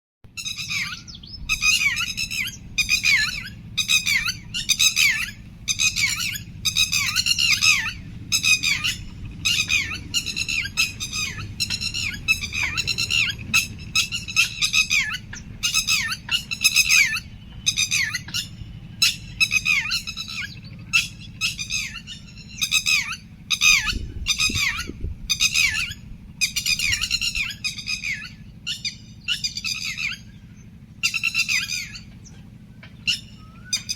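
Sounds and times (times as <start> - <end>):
birds chirping: 0.3 - 33.9
low steady rumble: 0.3 - 33.9.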